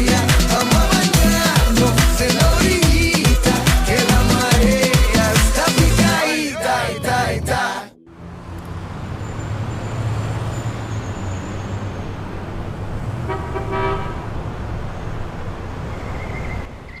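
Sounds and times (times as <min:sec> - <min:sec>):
low traffic rumble: 0:06.6 - 0:17.0.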